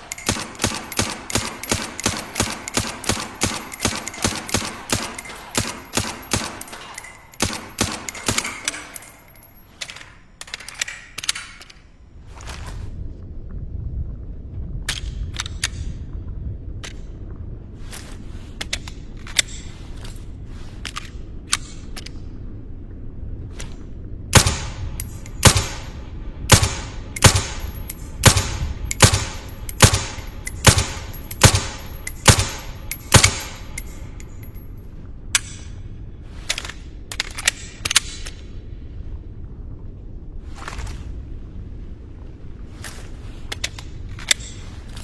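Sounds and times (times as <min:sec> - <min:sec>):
steady low rumble: 0:00.0 - 0:45.0
suppressed pistol shots: 0:24.4 - 0:33.9.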